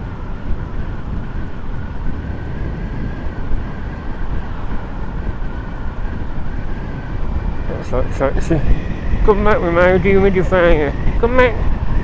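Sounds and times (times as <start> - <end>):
motorcycle engine running: 0.0 - 12.0
wind on microphone: 0.0 - 12.0.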